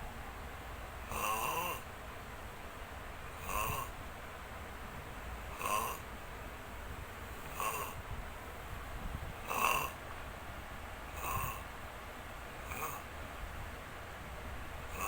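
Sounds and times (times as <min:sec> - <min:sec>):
person snoring: 0:01.1 - 0:01.8, 0:03.4 - 0:03.9, 0:05.6 - 0:06.0, 0:07.5 - 0:08.0, 0:09.5 - 0:10.0, 0:11.2 - 0:11.6, 0:12.7 - 0:13.0.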